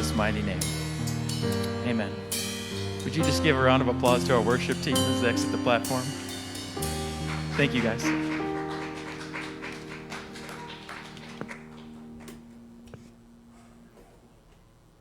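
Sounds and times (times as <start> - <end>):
band holding a chord: 0.0 - 14.1
people clapping: 6.6 - 12.6.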